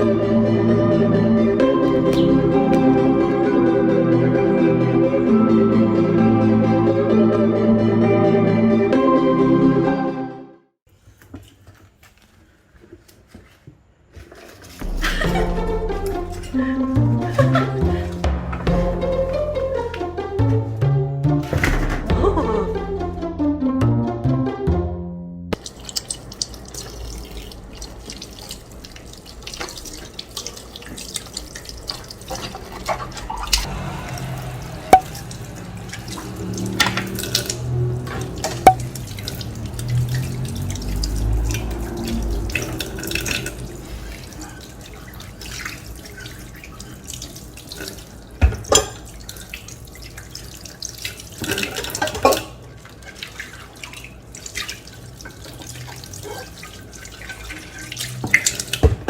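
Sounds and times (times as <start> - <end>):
tap running water: 25.6 - 59.0.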